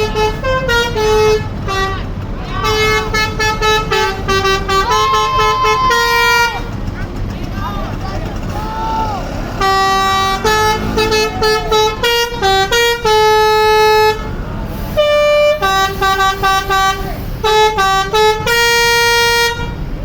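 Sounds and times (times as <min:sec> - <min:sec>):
bus musical horn playing: 0:00.0 - 0:07.3, 0:07.9 - 0:20.0.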